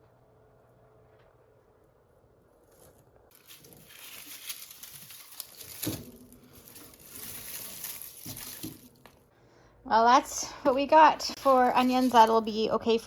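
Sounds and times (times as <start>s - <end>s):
onion skins rustling and crackling: 2.6s - 9.3s, 10.7s - 12.7s.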